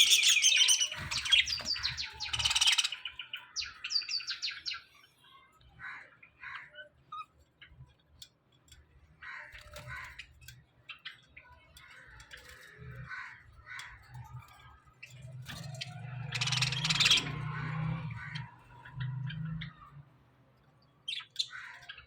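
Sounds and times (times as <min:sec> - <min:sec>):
budgerigars chirping and warbling: 0:00.0 - 0:04.9, 0:12.1 - 0:20.1, 0:21.1 - 0:22.0.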